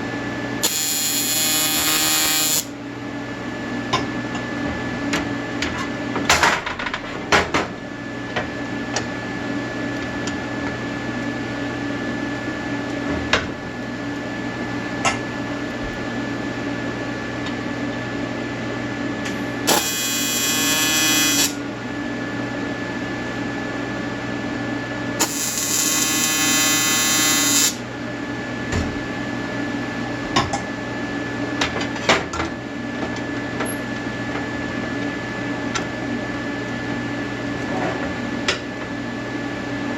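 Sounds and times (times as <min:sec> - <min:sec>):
welding machine hum: 0:00.0 - 0:02.8, 0:19.3 - 0:21.8, 0:25.2 - 0:27.9
welding arc buzzing: 0:00.6 - 0:02.8, 0:19.7 - 0:21.6, 0:25.2 - 0:27.8.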